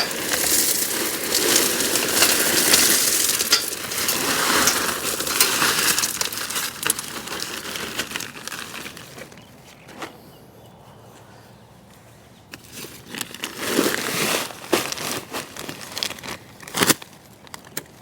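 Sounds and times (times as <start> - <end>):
gravel pouring rattle: 0.0 - 9.5.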